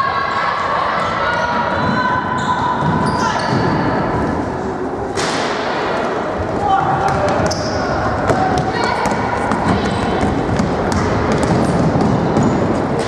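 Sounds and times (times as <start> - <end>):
players' voices: 0.0 - 13.0
basketball bouncing on court: 7.0 - 12.7.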